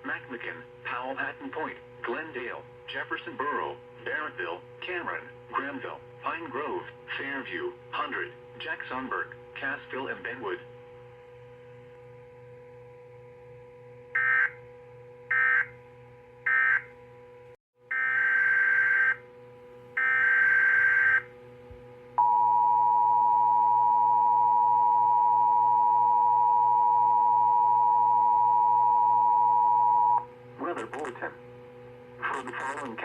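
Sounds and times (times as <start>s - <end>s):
faint steady hum: 0.0s - 33.0s
two-tone attention signal: 22.2s - 30.2s.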